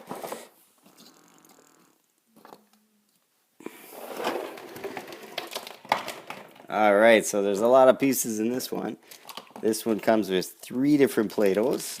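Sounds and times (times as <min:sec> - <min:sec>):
packaging rustling: 0:04.1 - 0:06.8, 0:11.2 - 0:12.0.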